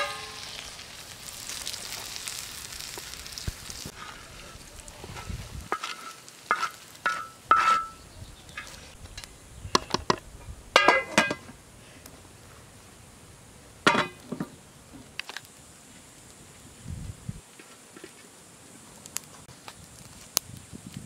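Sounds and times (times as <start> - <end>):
dishes and utensils clinking: 5.7 - 8.0, 10.8 - 11.5.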